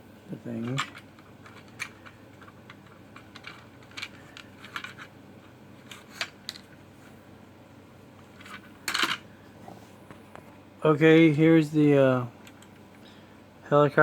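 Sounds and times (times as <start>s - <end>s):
plastic toy pieces clicking: 0.6s - 5.1s.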